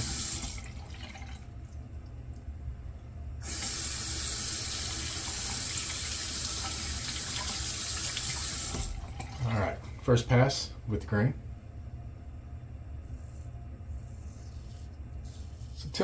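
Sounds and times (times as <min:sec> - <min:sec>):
tap water running into sink: 0:00.0 - 0:01.5, 0:03.4 - 0:09.8.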